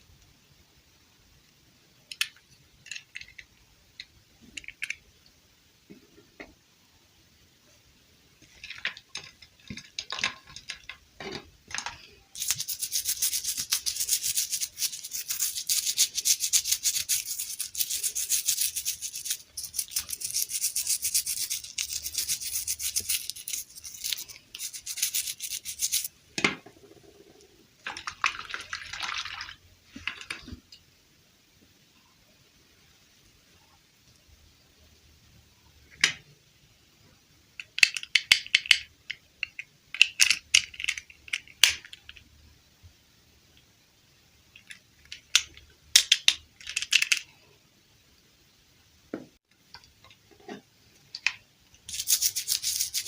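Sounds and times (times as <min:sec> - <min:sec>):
clicks and rustles: 0:08.4 - 0:16.2, 0:44.5 - 0:47.4
fast rubbing strokes on a surface: 0:12.4 - 0:26.1, 0:51.9 - 0:53.0.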